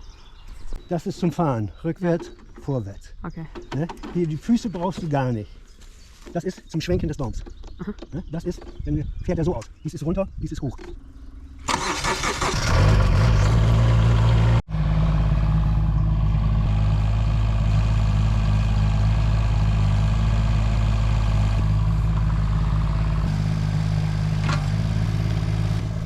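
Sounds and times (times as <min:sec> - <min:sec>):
excavator diesel engine: 0:11.2 - 0:26.0.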